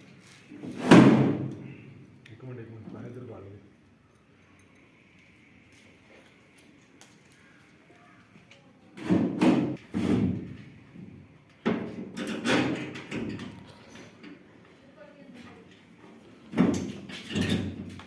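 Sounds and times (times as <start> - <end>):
heavy metal parts clattering: 16.7 - 18.0.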